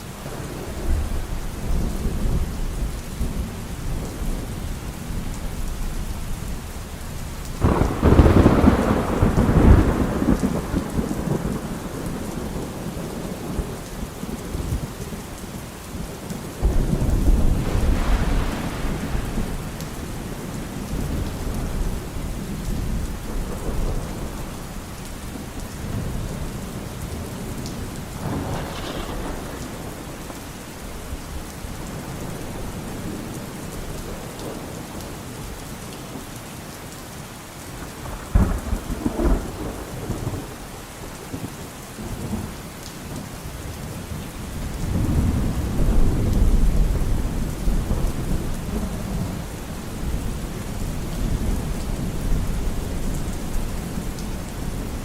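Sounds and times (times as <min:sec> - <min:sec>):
heavy rain: 0:00.0 - 0:55.0
thunder rumbling: 0:07.6 - 0:14.9, 0:16.0 - 0:34.8, 0:37.8 - 0:42.5, 0:44.5 - 0:55.0.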